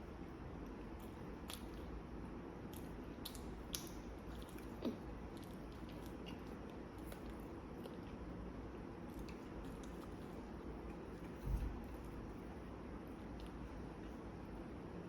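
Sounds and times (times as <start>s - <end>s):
person chewing food: 2.7s - 8.4s, 9.0s - 14.6s.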